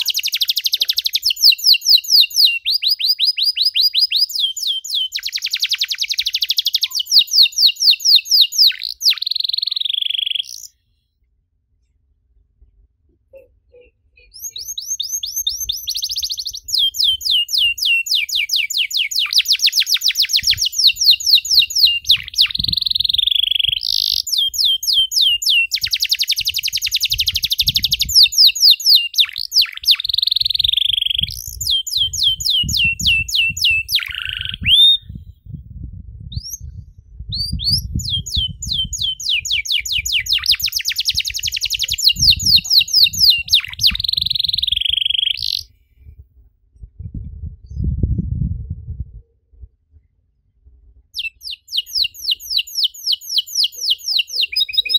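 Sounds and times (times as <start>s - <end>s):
canary singing: 0.0s - 10.8s, 13.3s - 35.2s, 37.3s - 45.8s, 51.2s - 54.9s
faint low rumble: 34.6s - 38.8s, 45.8s - 51.2s.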